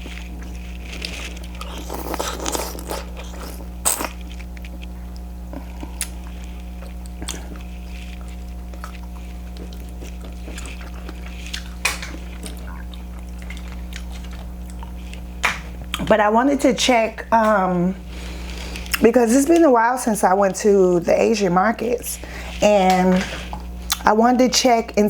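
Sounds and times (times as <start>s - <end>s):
chewing and wet mouth noises: 0.0s - 16.2s, 18.2s - 19.6s, 21.8s - 24.1s.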